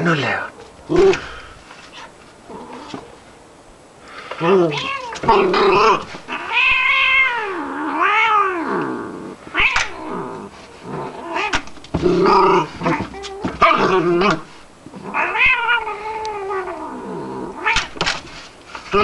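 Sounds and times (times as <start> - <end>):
low growls: 0.0 - 3.0, 4.4 - 17.8
cat yowling: 4.6 - 8.9, 9.5 - 10.4, 11.2 - 11.6, 15.0 - 17.9.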